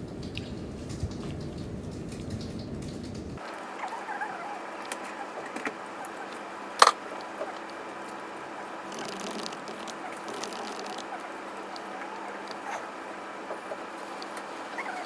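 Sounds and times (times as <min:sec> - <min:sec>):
steady background noise: 0:00.0 - 0:15.0.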